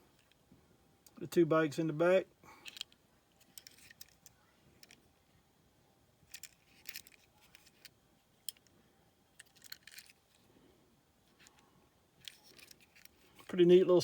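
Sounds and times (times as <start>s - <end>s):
toy cars clicking and rattling: 2.6s - 5.0s, 6.3s - 8.7s, 9.3s - 10.4s, 12.2s - 13.5s.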